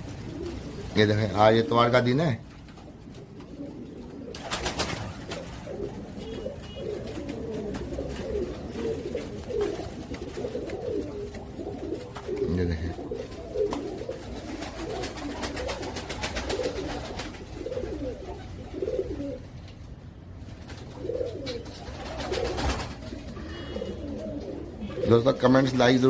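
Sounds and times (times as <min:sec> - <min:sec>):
pigeons cooing: 0:00.0 - 0:26.0
light clicking rustle: 0:08.8 - 0:12.5.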